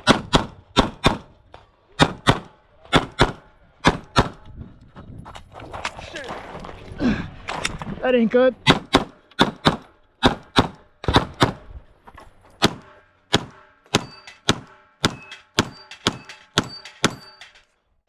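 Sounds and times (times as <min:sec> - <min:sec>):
rapid pistol shots: 0:00.0 - 0:01.3, 0:02.0 - 0:04.4, 0:08.6 - 0:11.6, 0:12.6 - 0:17.4.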